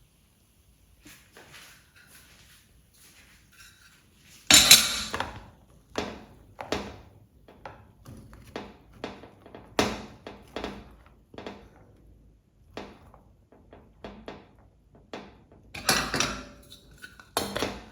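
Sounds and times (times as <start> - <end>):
pots and utensils clattering: 3.5 - 5.4, 12.7 - 17.9
loud clank: 4.5 - 5.2.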